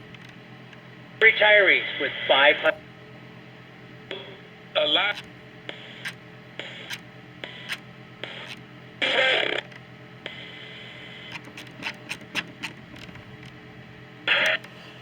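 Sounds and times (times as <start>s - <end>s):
radio static hiss with hum: 1.2s - 2.9s, 4.0s - 15.0s
static crackles: 5.0s - 12.1s, 14.3s - 14.7s
loud bursts of garbled noise: 5.1s - 9.6s.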